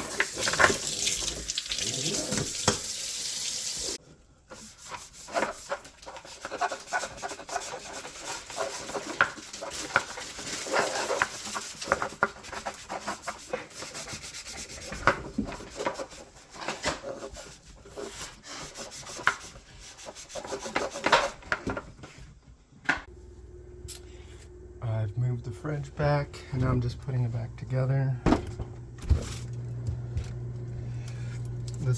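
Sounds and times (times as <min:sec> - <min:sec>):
rubbing and scraping: 0:04.5 - 0:22.3.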